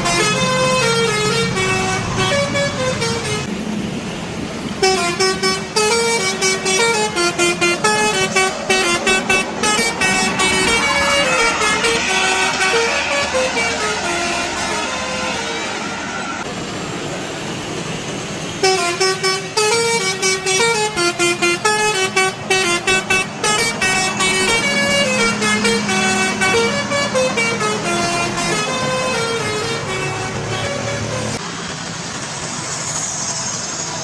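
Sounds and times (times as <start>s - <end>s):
multi-tone bus horn tune: 0.0s - 3.5s, 4.8s - 16.5s, 18.5s - 31.4s
traffic noise: 0.0s - 34.0s.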